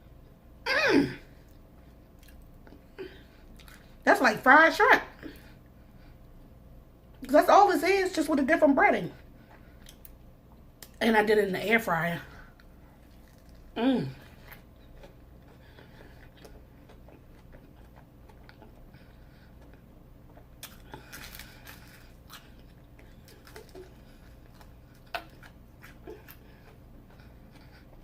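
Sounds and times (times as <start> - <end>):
person chewing crunchy food: 1.4 - 4.0, 12.6 - 28.0.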